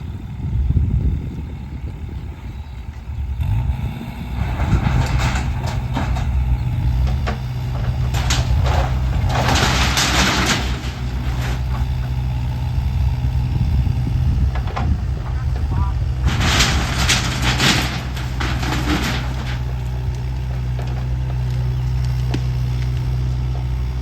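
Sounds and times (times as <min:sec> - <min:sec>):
diesel engine droning: 0:00.0 - 0:24.0
debris crunching and cracking: 0:04.3 - 0:13.4, 0:14.0 - 0:24.0.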